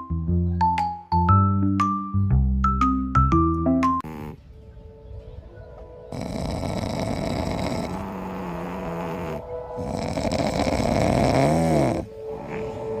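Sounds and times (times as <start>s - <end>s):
cat snoring: 4.0s - 4.4s, 6.1s - 13.0s.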